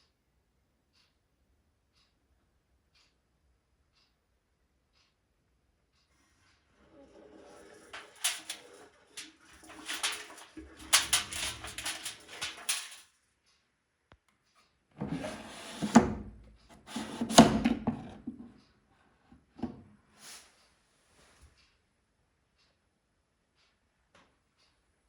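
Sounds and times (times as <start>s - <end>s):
scraping and rustling: 7.9s - 13.1s, 15.0s - 18.3s.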